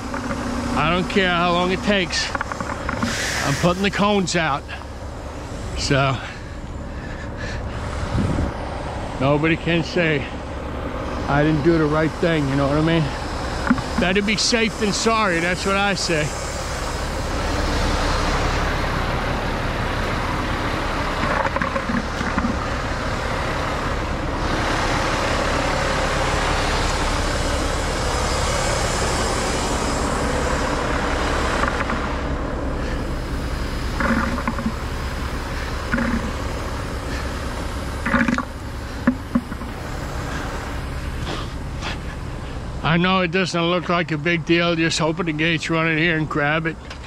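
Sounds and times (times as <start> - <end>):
garbage truck engine rumbling: 0.0 - 47.0
wide hiss: 3.0 - 6.2.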